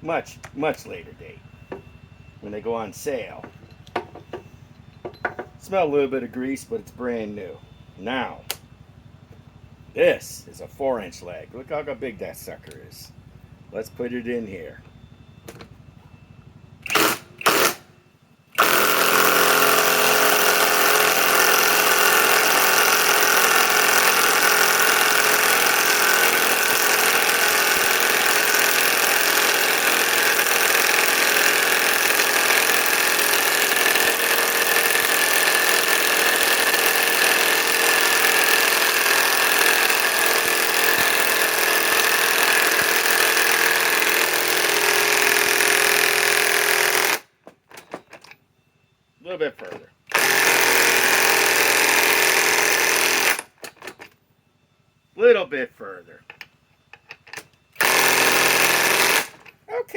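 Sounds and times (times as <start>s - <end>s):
impact wrench driving screw into wood: 16.8s - 17.8s, 18.6s - 48.3s, 50.1s - 54.1s, 57.1s - 59.5s.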